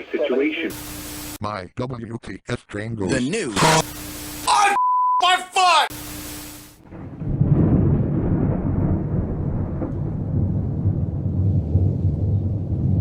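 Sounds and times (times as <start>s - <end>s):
thunder rumbling: 6.8s - 13.0s.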